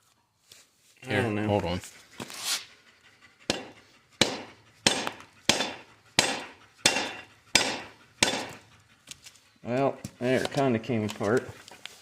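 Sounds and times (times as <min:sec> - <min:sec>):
hammer ringing on metal: 0:03.5 - 0:08.6.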